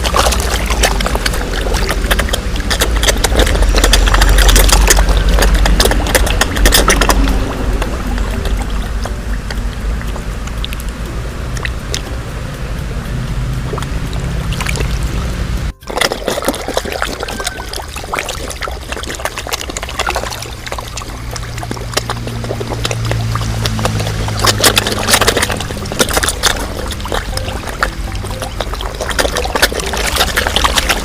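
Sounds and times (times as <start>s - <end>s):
water splashing in a pond: 0.0s - 12.1s, 13.4s - 31.0s
music: 8.8s - 18.8s.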